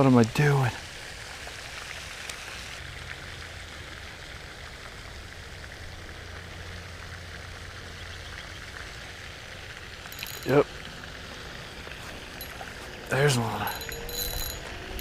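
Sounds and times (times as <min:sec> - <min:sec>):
outdoor background hiss: 0:00.0 - 0:15.0
low hum: 0:10.0 - 0:15.0.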